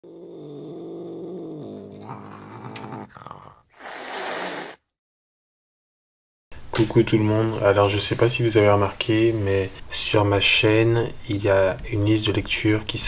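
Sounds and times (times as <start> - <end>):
cat low drawn-out vocal sound: 0.0 - 4.8.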